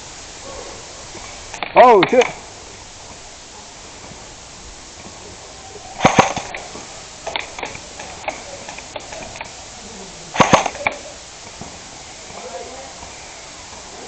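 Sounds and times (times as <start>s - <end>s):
sharp clicks and knocks: 6.0s - 9.6s, 10.4s - 11.8s.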